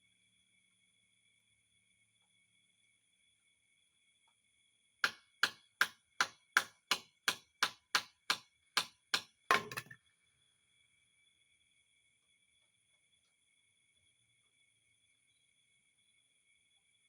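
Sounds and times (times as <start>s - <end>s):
sharp evenly spaced knocks: 5.0s - 9.9s.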